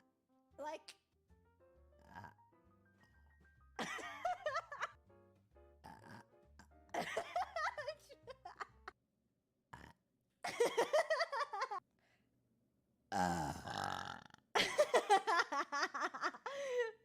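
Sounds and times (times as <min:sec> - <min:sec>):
woman's voice: 0:00.6 - 0:00.9, 0:07.6 - 0:08.2
woman burping: 0:13.1 - 0:14.4.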